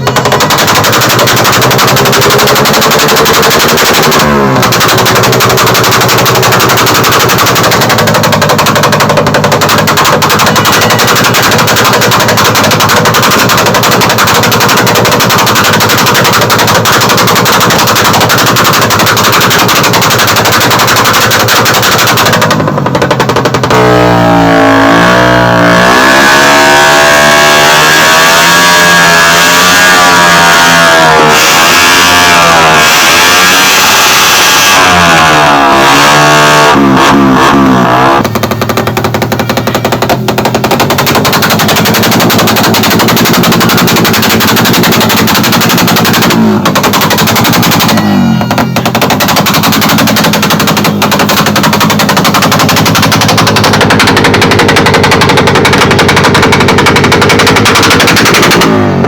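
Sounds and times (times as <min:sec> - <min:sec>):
exhaust backfire popping: 0:00.0 - 0:59.0
motorcycle engine revving: 0:00.0 - 0:59.0.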